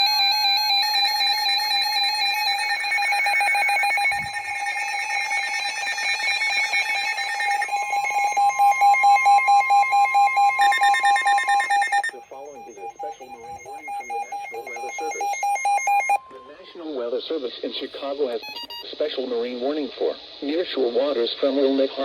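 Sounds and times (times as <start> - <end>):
steady electronic tone: 0.0 - 16.3
pulsed electronic alarm beeps: 0.0 - 16.6, 18.4 - 19.1.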